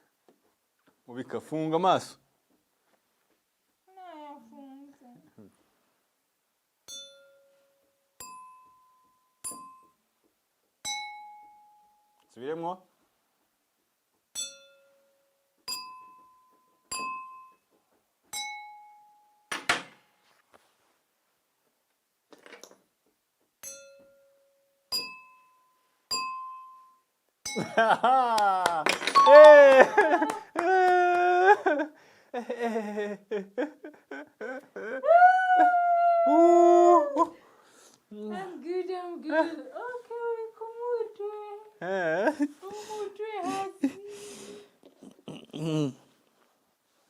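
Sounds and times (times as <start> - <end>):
glasses struck ringing: 6.9 - 10.0, 10.8 - 12.1, 14.4 - 17.7, 18.3 - 19.6, 23.6 - 27.8, 28.9 - 29.6.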